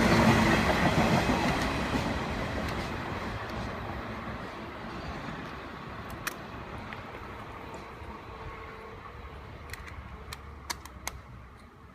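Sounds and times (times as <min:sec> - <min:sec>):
electric train rumbling: 0:00.0 - 0:11.9
sharp clicks: 0:06.0 - 0:07.0, 0:09.6 - 0:11.7.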